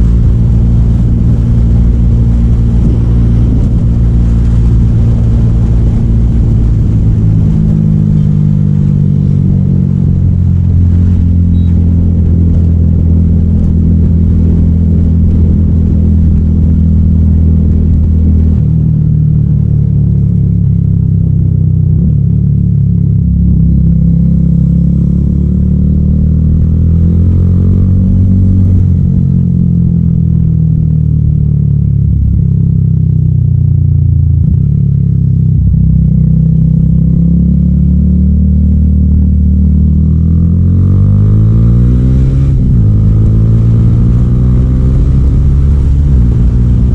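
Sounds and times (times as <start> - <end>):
motorcycle exhaust running: 0.0 - 46.9.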